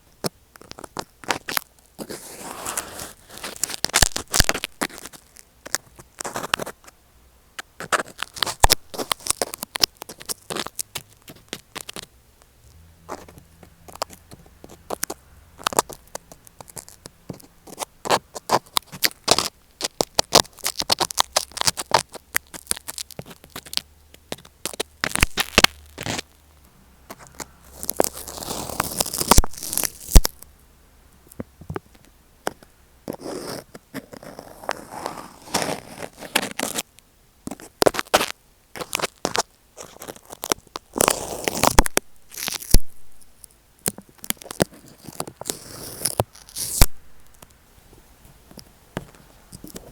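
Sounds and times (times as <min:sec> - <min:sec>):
continuous rubbing on microphone: 0:00.0 - 0:07.0, 0:07.6 - 0:12.2, 0:13.0 - 0:26.4, 0:31.4 - 0:36.9, 0:42.7 - 0:49.9
microphone scratching and clicking: 0:00.6 - 0:07.0, 0:07.6 - 0:26.5, 0:27.1 - 0:30.4, 0:37.5 - 0:47.6, 0:48.5 - 0:49.9.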